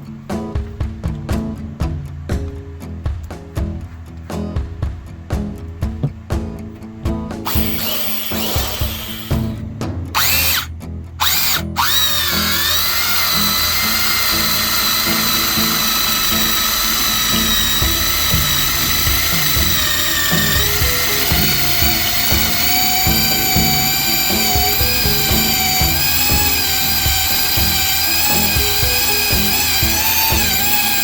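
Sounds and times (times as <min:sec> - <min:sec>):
electric drill motor whining: 0:07.4 - 0:09.6, 0:10.2 - 0:31.0.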